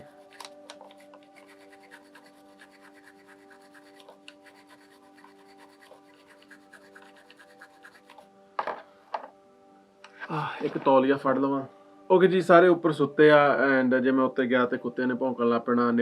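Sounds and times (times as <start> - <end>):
brush scrubbing metal: 0.0 - 8.2
soft background music: 0.0 - 16.0
gun set down clack: 8.6 - 9.3.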